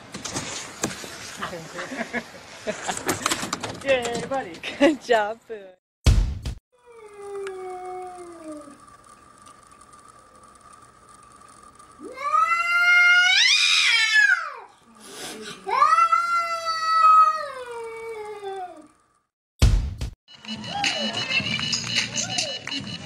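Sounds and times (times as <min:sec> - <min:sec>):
faint steady high tone: 0:06.8 - 0:12.1
cat yowling: 0:12.0 - 0:14.6, 0:15.7 - 0:18.9.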